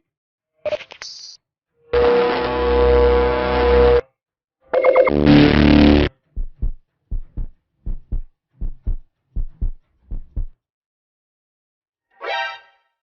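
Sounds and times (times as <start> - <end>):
heartbeat thuds: 6.2 - 10.6.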